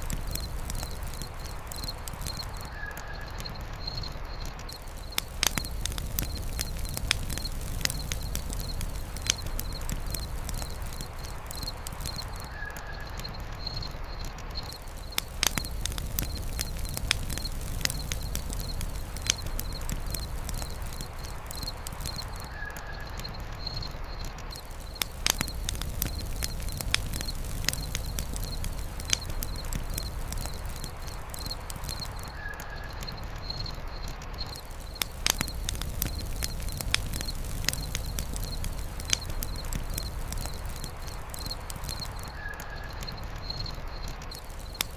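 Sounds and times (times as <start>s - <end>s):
campfire crackling and popping: 0.0s - 44.9s
faint high insect chirp: 0.0s - 44.9s.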